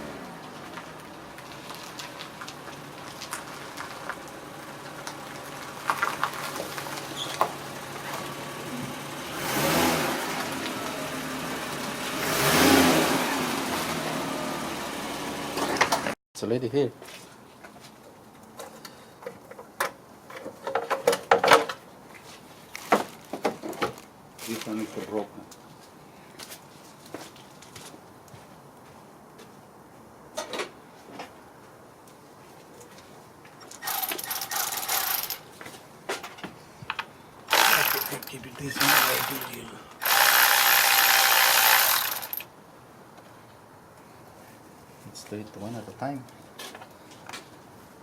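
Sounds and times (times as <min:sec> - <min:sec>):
sharp clicks and ticks: 0:36.9 - 0:42.5.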